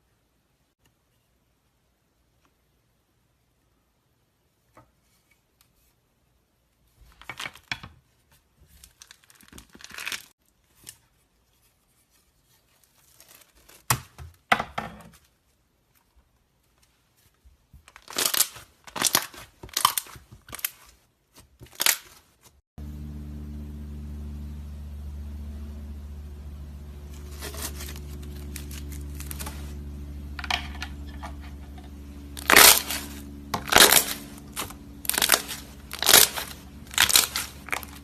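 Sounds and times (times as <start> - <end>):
slime squishing and crackling: 17.9 - 20.8, 32.4 - 38.0
steady low hum: 22.8 - 38.0.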